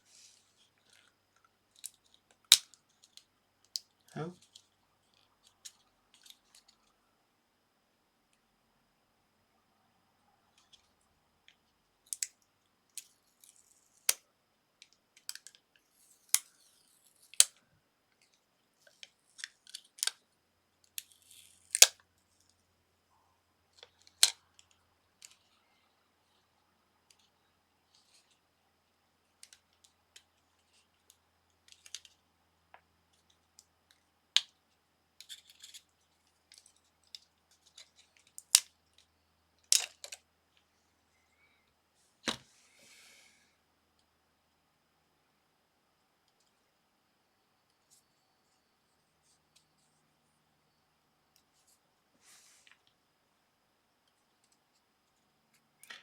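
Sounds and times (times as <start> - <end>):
plastic parts clicking and snapping: 1.7 - 3.9, 31.7 - 32.2, 36.5 - 40.2.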